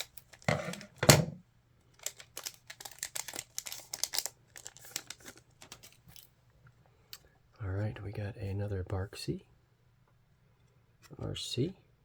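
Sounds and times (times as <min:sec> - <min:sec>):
card wrapper tearing and crinkling: 0:00.0 - 0:01.0, 0:01.9 - 0:06.2.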